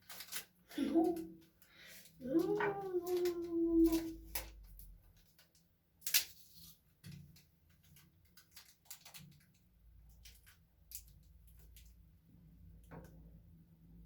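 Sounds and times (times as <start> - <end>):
plastic bag crackling: 0.0 - 11.9
adhesive tape crackling: 2.2 - 11.9.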